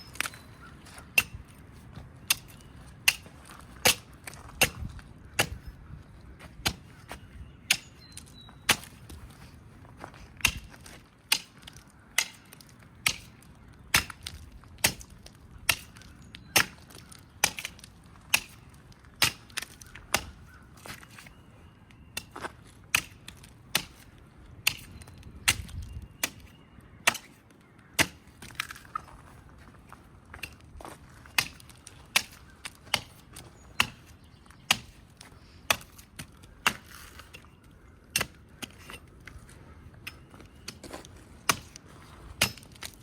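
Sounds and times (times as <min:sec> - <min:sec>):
tool chopping into wood: 0:02.3 - 0:05.7, 0:10.4 - 0:11.6, 0:31.3 - 0:34.1, 0:34.7 - 0:35.0.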